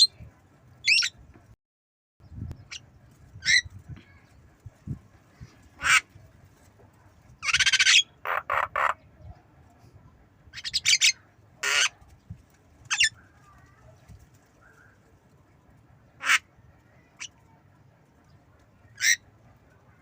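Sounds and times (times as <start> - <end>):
bird squawks and calls: 0.8 - 1.2, 3.4 - 4.3, 5.8 - 6.1, 7.4 - 9.0, 10.5 - 12.0, 12.8 - 13.7, 16.2 - 17.5, 18.9 - 19.3.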